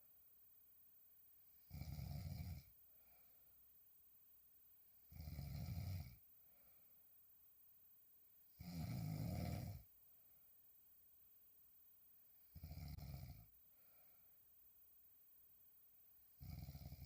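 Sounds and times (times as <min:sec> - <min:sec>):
quiet breathing: 0:00.0 - 0:17.0
woman snoring: 0:01.7 - 0:02.7, 0:05.1 - 0:06.2, 0:08.6 - 0:09.9, 0:12.6 - 0:13.5, 0:16.4 - 0:17.0.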